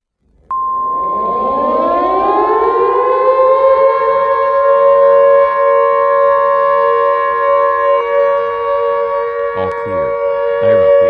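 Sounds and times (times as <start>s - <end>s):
steady high alert tone: 0.5s - 3.8s, 9.5s - 11.0s
civil defense siren wailing: 0.8s - 11.0s.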